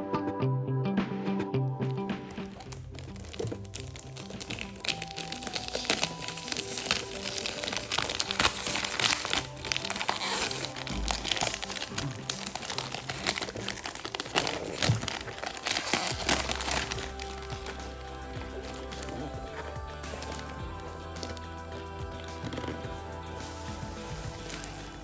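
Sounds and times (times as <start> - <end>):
background music: 0.0 - 25.0
packaging crinkling: 1.8 - 21.6.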